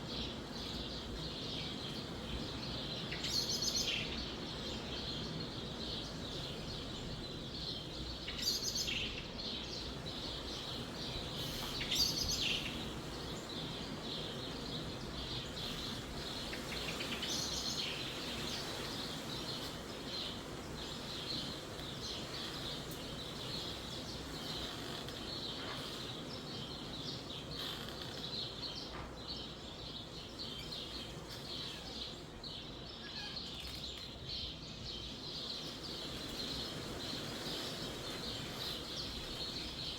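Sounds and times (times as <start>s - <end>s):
wind in trees: 0.0s - 39.9s.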